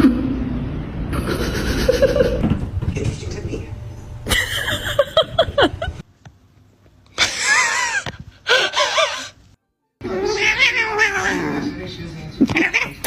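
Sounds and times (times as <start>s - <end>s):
cat yowling: 10.1s - 11.7s, 12.4s - 13.0s.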